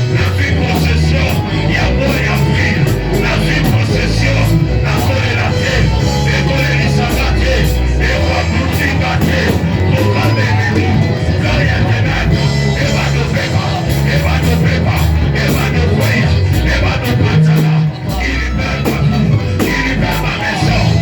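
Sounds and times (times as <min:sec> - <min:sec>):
heavy bass notes: 0:00.0 - 0:21.0
loud band music: 0:00.0 - 0:21.0
drum hits: 0:08.8 - 0:11.2.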